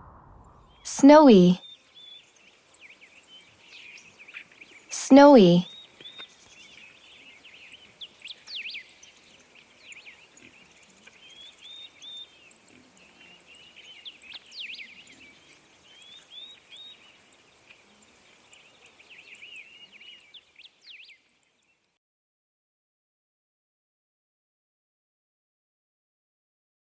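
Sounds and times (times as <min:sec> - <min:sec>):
small birds chirping: 0:01.7 - 0:05.0, 0:05.6 - 0:21.9.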